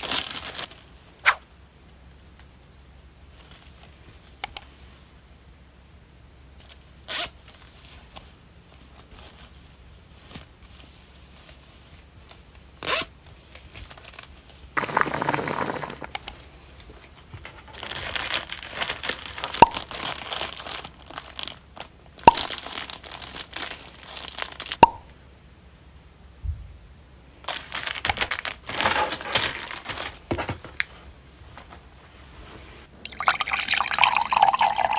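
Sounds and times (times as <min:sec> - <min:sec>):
hands crinkling material: 0:16.9 - 0:24.8.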